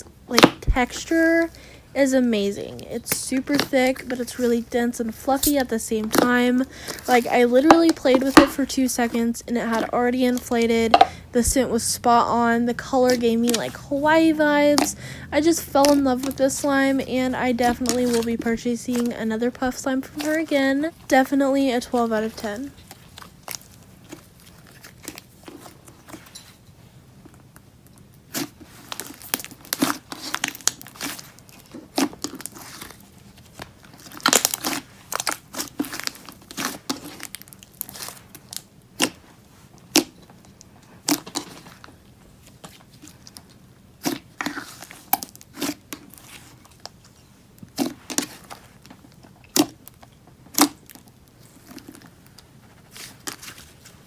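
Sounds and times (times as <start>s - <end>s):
slime squished by hand: 28.2s - 40.2s, 41.0s - 41.9s.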